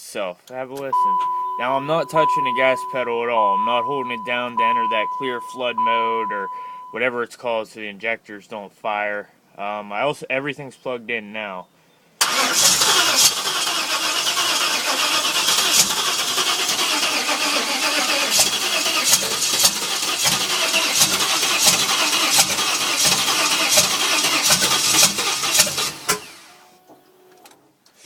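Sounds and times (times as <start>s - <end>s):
engine cranking on starter motor: 12.2s - 26.8s.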